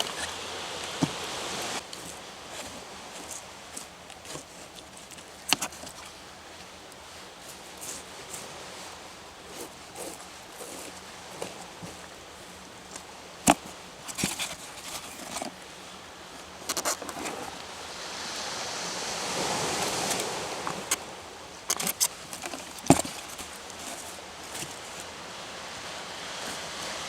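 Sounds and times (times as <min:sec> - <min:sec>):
sea wave washing in: 0:00.0 - 0:01.8, 0:17.2 - 0:21.4.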